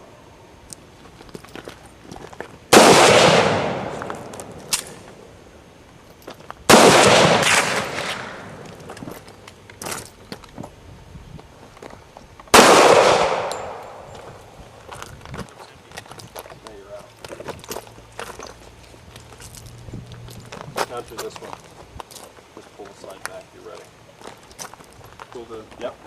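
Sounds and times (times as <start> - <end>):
shotgun shots with echo: 2.7 - 5.0, 6.7 - 8.6, 12.6 - 14.1.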